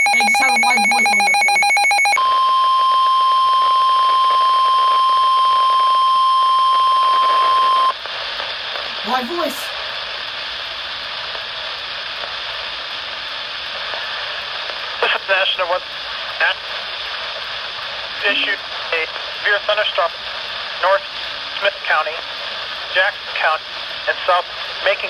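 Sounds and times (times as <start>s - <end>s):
high steady alarm tone: 0.0s - 8.0s
radio hiss: 0.0s - 25.0s.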